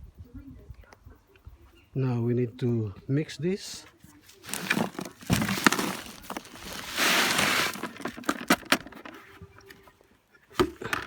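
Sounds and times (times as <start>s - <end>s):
gritty rushing of gravel: 4.4s - 8.3s.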